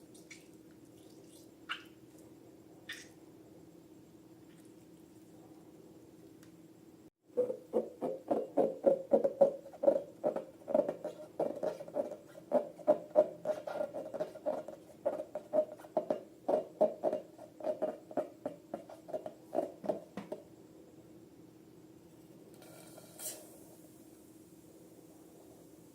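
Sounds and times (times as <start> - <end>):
squishy squeaks of slime: 1.3 - 2.0, 2.9 - 3.2.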